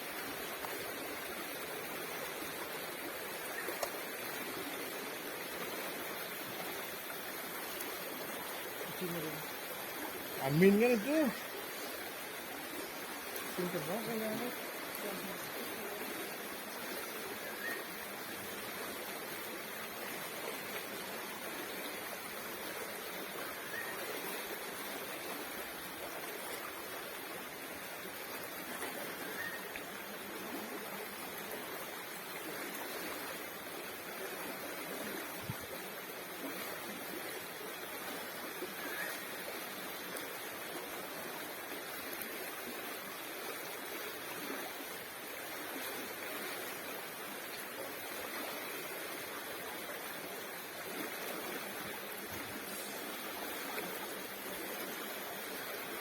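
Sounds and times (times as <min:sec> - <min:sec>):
flowing water rushing: 0:00.0 - 0:56.0
faint high chirp: 0:17.4 - 0:17.9, 0:29.2 - 0:29.7.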